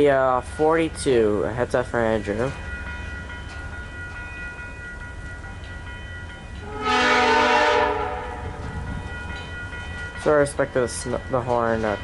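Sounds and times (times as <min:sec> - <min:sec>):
low rumble of approaching train: 0:00.0 - 0:12.0
locomotive horn blast: 0:06.6 - 0:08.6.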